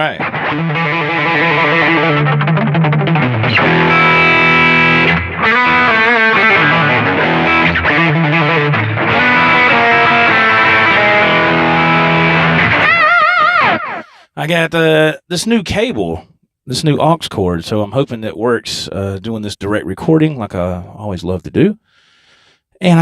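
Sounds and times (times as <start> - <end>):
distorted electric guitar: 0.0 - 14.2.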